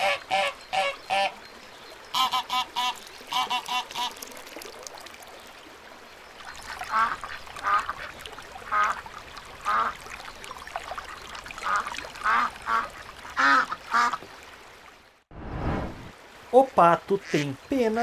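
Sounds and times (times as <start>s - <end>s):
ducks quacking: 2.1s - 4.2s, 6.5s - 10.0s, 11.6s - 14.2s, 17.1s - 18.0s.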